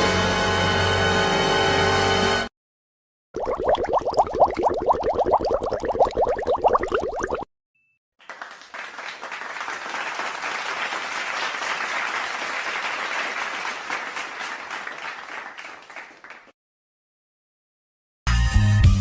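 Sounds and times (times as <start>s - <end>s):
crowd applause: 8.2s - 16.5s.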